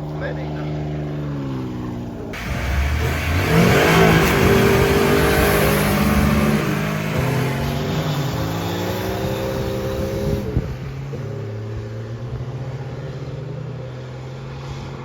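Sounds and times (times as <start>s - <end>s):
engine revving hard: 0.0s - 11.9s.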